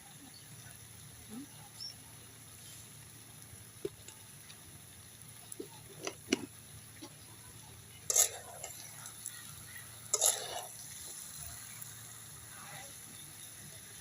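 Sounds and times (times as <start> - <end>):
spoon stirring in a cooking pan: 5.4 - 7.3, 7.9 - 12.0.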